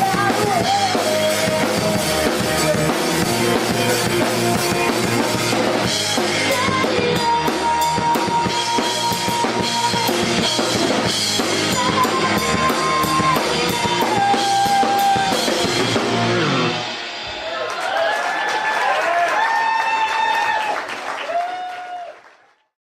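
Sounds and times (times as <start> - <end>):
pop-rock band playing live: 0.0 - 17.9.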